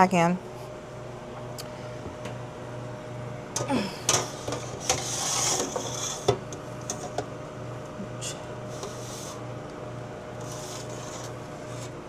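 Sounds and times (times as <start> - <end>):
low machine hum: 0.0 - 12.0
tray scraping slide: 4.3 - 6.3, 8.7 - 9.4, 10.4 - 12.0.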